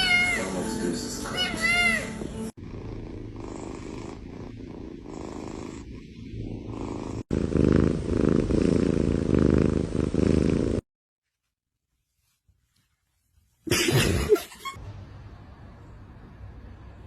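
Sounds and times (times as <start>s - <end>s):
cat purring: 2.5s - 10.8s.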